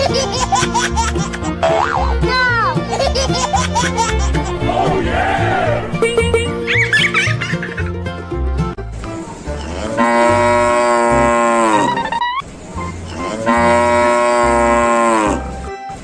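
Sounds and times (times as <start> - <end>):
background music: 0.0 - 16.0
cow mooing: 9.6 - 12.0, 13.2 - 15.5.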